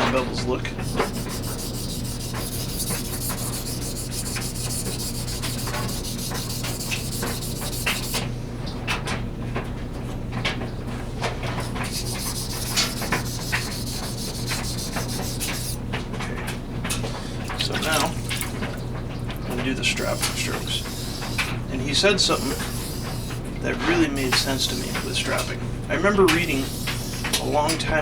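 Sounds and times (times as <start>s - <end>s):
knife scraping on whetstone: 0.8s - 8.2s, 11.6s - 15.8s, 19.8s - 25.5s, 26.3s - 27.6s.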